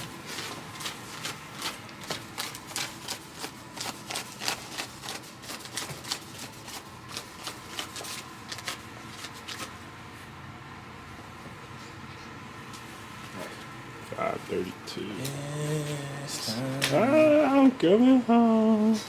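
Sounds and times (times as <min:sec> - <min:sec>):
footsteps walking: 0:00.0 - 0:09.7
low hall hum: 0:09.8 - 0:19.0.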